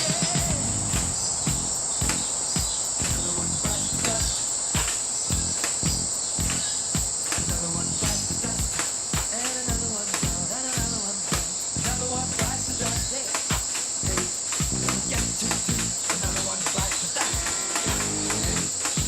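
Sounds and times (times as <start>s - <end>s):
high-pitched insect drone: 0.0s - 19.0s
low thumps and rumble: 0.5s - 2.4s, 5.3s - 6.7s.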